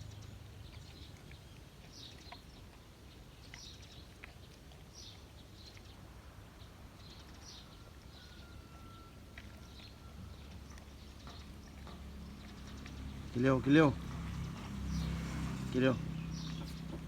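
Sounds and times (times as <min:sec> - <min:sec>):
dog chewing and crunching: 0:00.0 - 0:06.2, 0:09.1 - 0:17.0
thin whistle-like tone: 0:08.2 - 0:09.2.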